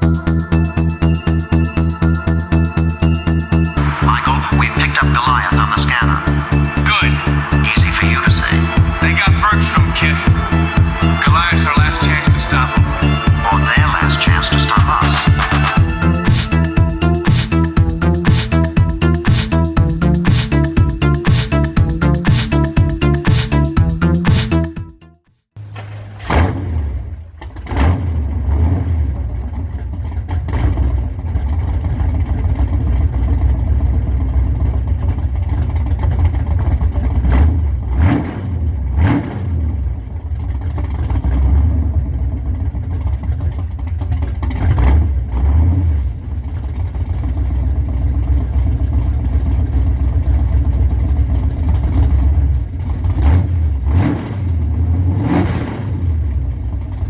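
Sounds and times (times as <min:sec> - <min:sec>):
engine throttle blips: 0:00.0 - 0:57.0
car engine idling loudly: 0:27.2 - 0:55.0.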